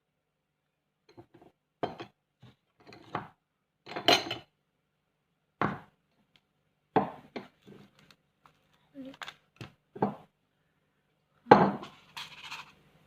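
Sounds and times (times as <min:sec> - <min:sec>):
utensils and dishes clattering: 0:11.7 - 0:12.8.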